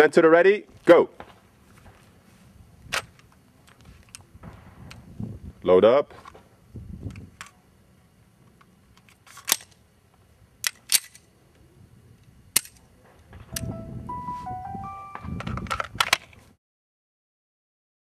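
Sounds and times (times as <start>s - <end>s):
brief steady tones: 13.5s - 15.8s.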